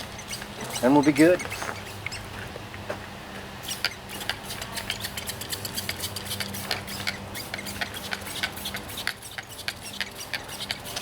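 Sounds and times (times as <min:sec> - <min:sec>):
spray bottle spritzing: 0:03.6 - 0:11.0.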